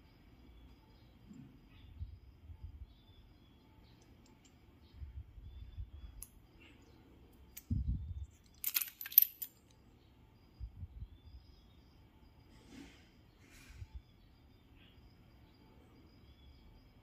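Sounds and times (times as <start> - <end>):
small metal parts clinking: 4.0 - 4.6, 6.0 - 9.8.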